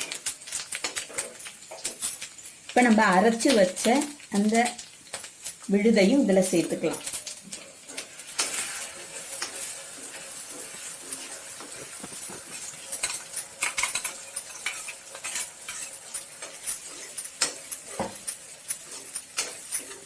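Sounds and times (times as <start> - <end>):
oil sizzling: 0.0 - 20.0
spoon scraping in a pan: 0.0 - 20.0
spoon knocking against pan: 17.4 - 19.6.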